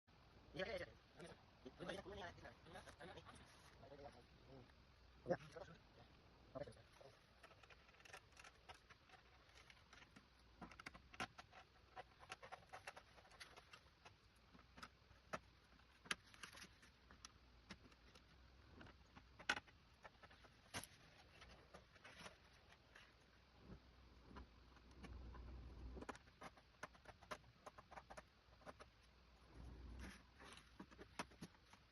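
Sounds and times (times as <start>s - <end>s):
small hard parts clicking and tapping: 7.2s - 23.2s.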